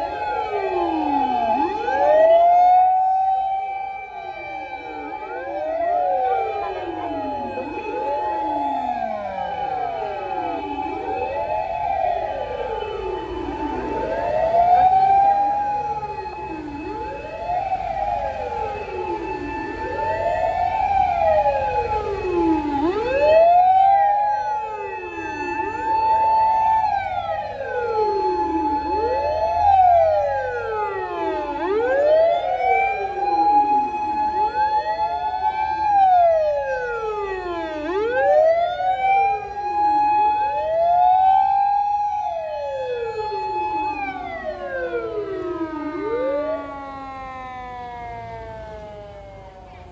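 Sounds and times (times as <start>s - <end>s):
fire engine sirens wailing: 0.0s - 49.9s.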